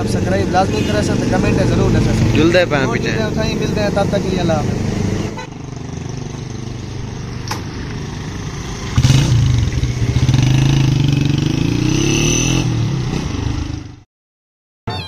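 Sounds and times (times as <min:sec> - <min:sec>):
vehicle engine accelerating: 0:01.2 - 0:14.0.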